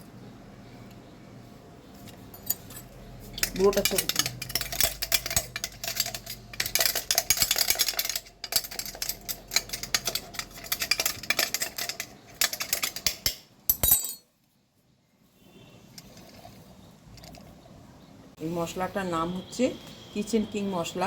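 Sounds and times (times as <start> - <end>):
metal spoon scraping steel: 2.3 - 13.4.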